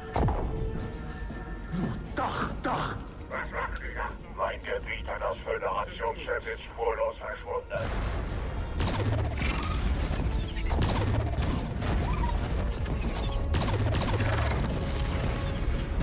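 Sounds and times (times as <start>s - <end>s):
background music: 0.0s - 16.0s
explosions: 7.8s - 16.0s.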